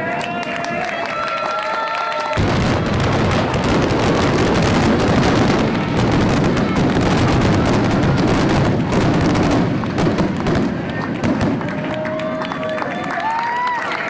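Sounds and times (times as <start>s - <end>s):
fireworks bangs and crackles: 2.2s - 13.4s.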